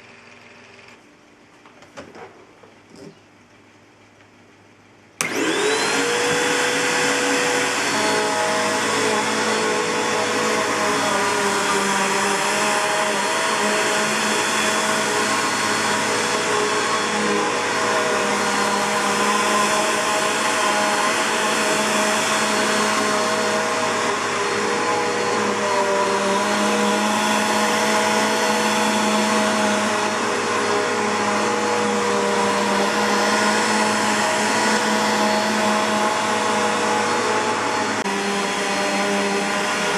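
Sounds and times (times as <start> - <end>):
vacuum cleaner motor whining: 5.2 - 39.9.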